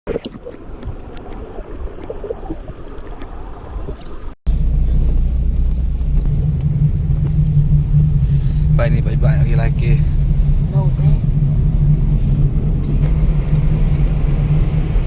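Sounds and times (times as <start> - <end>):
noisy rumble: 4.5 - 15.0
vehicle engine low drone: 4.5 - 15.0.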